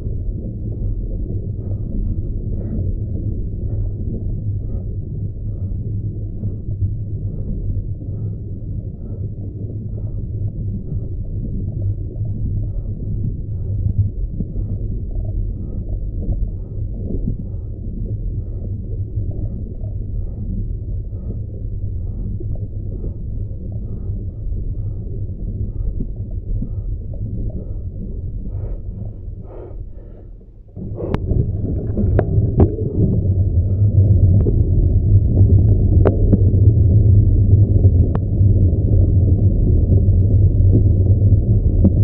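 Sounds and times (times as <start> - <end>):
wind and road noise rumble: 30.6 - 42.0.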